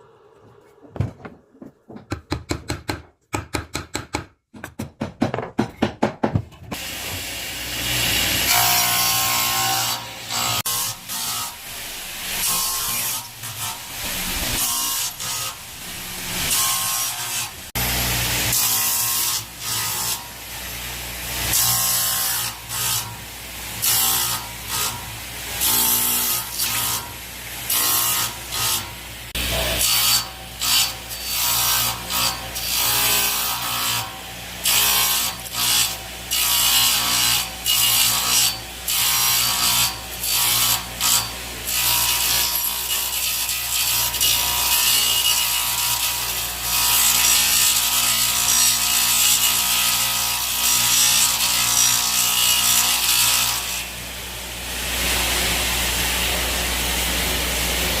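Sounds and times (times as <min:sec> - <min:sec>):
saw blade cutting wood: 0:06.7 - 0:23.2, 0:23.8 - 0:54.0.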